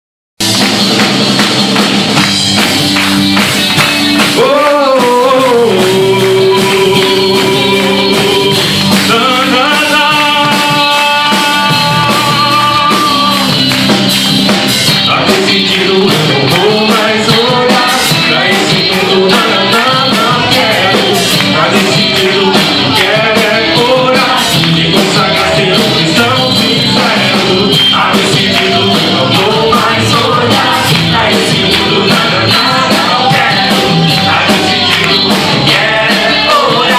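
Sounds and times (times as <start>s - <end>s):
band playing: 0.4s - 36.9s
person singing long notes: 4.3s - 13.7s.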